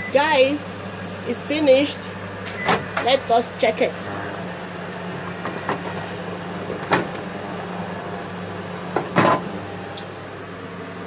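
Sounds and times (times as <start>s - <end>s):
microwave door clunk: 5.3s - 8.2s, 8.8s - 10.1s.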